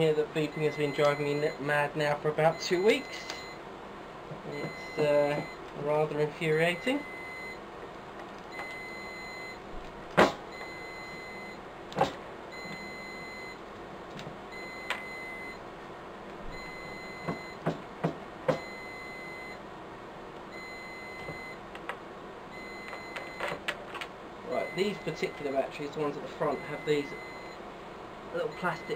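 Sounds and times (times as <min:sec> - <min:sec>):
alarm short high beeps: 0:04.5 - 0:05.6, 0:24.5 - 0:25.6, 0:26.4 - 0:27.6.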